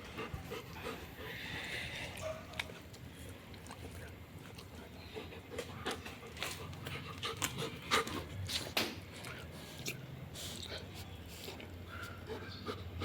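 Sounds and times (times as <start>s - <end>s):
dog panting: 0.0s - 2.3s, 9.5s - 13.0s.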